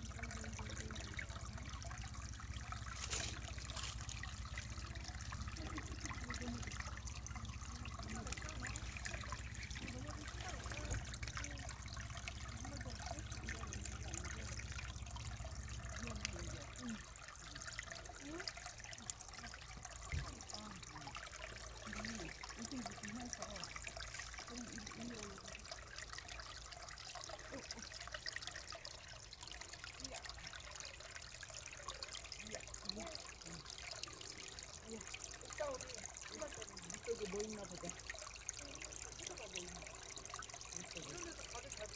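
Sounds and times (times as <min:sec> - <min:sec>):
stream babbling over rocks: 0:00.0 - 0:41.9.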